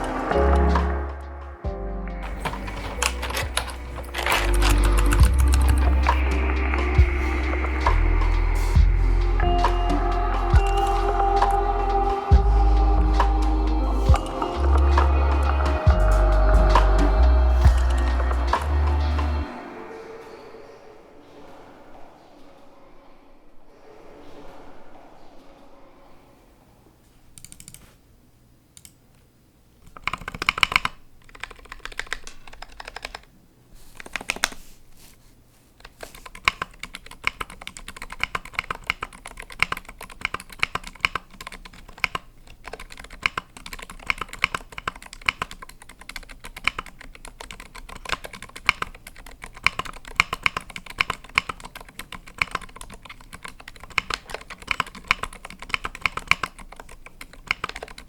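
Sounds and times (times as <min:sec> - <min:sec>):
mechanical keyboard typing: 0:02.2 - 0:08.0, 0:14.1 - 0:18.9, 0:27.4 - 0:28.0, 0:29.8 - 0:33.3, 0:33.9 - 0:34.6, 0:35.8 - 0:58.0.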